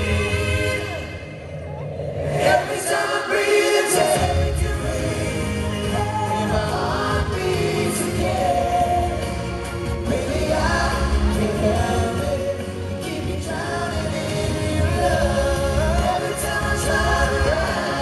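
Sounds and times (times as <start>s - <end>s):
male vocal group singing ballad: 0.0s - 1.5s, 2.2s - 18.0s
backing track with bass: 4.1s - 18.0s.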